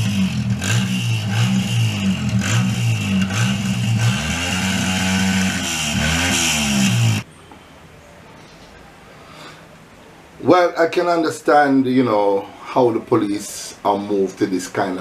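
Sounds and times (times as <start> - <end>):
motorcycle engine revving: 0.0 - 7.3.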